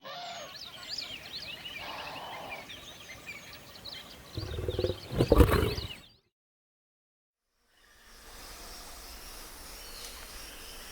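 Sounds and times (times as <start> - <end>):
birds chirping: 1.4 - 6.1
tiger roaring: 4.4 - 6.0.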